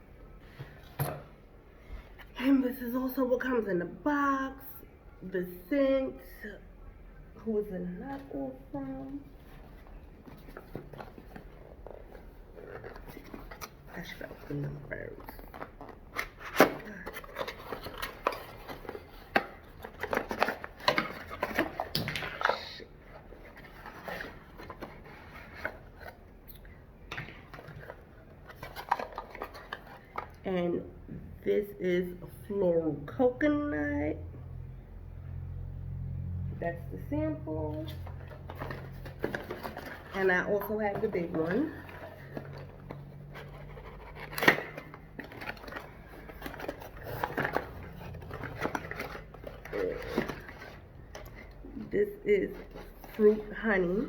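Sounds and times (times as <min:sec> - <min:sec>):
packaging handled by hand: 0:08.8 - 0:26.3, 0:38.0 - 0:51.7.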